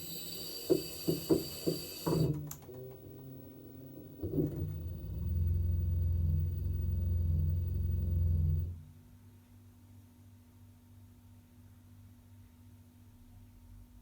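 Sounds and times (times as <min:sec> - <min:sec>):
washing machine humming: 0:00.0 - 0:09.0
knocks: 0:00.6 - 0:02.6.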